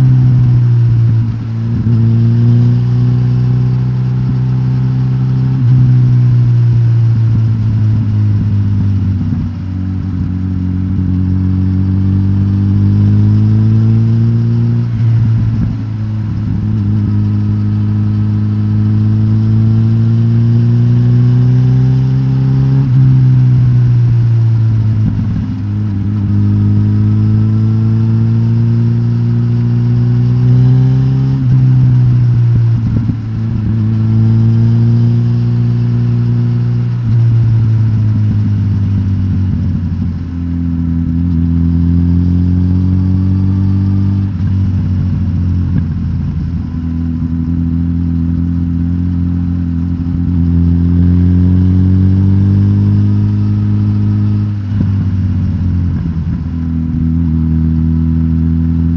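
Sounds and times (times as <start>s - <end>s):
motorcycle engine revving: 0.0s - 58.9s.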